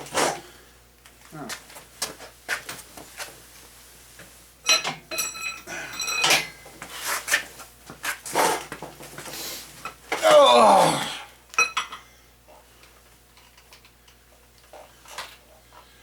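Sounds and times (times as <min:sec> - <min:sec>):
metal tools clanking on engine: 0:04.7 - 0:06.6.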